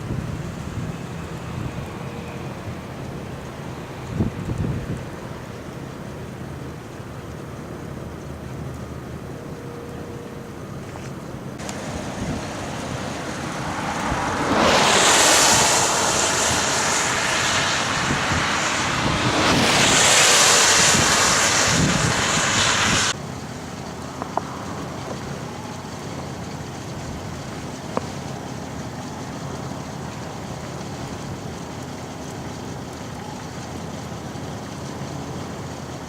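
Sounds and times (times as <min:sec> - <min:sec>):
wind rushing in gusts: 0:00.0 - 0:05.5, 0:11.6 - 0:23.2.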